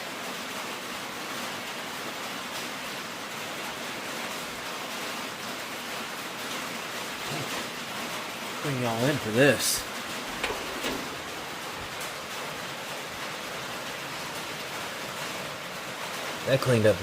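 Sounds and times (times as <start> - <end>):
rain on a metal roof: 0.0 - 17.0.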